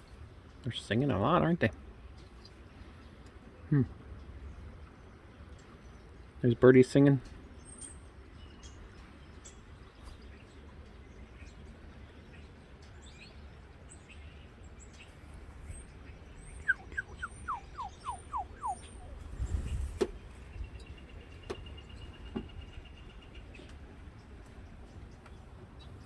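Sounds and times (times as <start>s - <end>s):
songbirds singing: 0.0s - 26.0s
wind rumbling on microphone: 12.6s - 26.0s
high thin bird chirps: 15.0s - 23.5s
high bird trill: 15.8s - 23.6s
down-slurred bird whistles: 16.2s - 20.8s.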